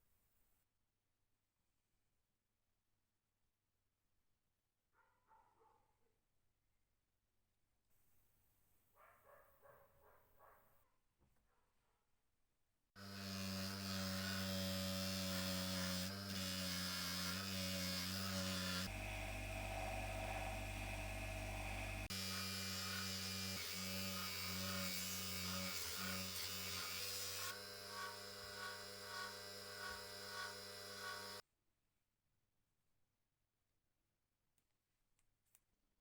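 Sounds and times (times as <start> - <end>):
electric motor humming: 13.0 - 31.4.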